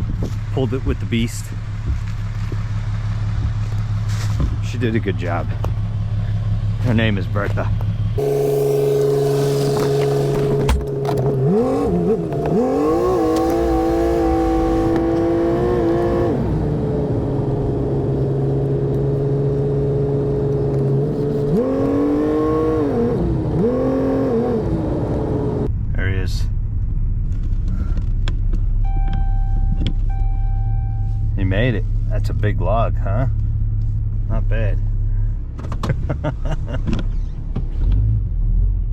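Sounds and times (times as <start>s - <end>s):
engine revving: 6.8s - 25.7s.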